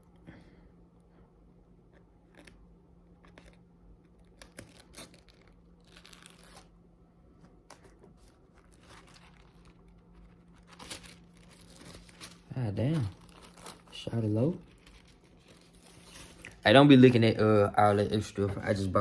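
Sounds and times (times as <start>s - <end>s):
packaging rustling and tearing: 4.2s - 6.7s, 7.7s - 16.6s.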